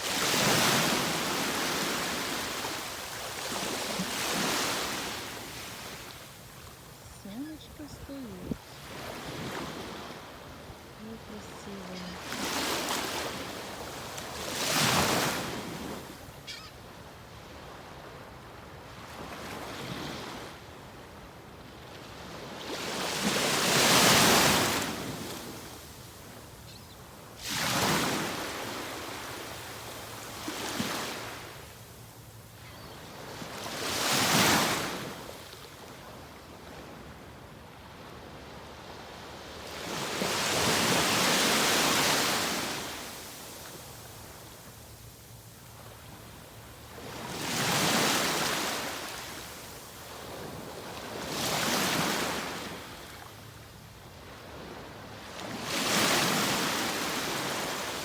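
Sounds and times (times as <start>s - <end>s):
ocean waves breaking: 0.0s - 16.2s.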